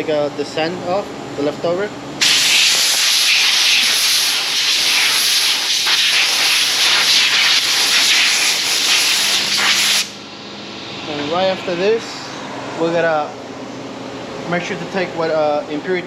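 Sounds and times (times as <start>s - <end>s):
compressed air blow gun hissing: 2.2s - 10.2s.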